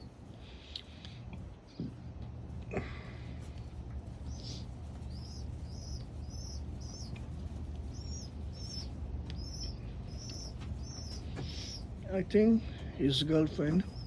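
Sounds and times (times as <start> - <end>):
low steady hum: 0.0 - 14.0
pigeon squab begging peeps: 3.6 - 12.0, 13.1 - 14.0.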